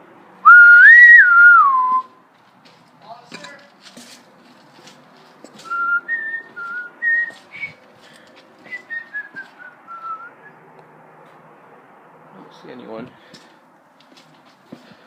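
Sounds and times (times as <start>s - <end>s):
person whistling a tune: 0.5s - 2.1s, 5.7s - 7.8s, 8.7s - 10.4s.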